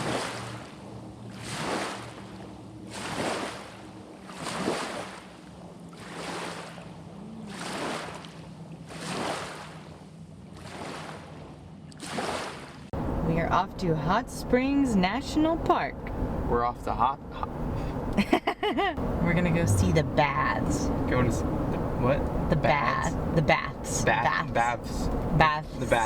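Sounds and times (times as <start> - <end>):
water swishing in surges: 0.0 - 13.2.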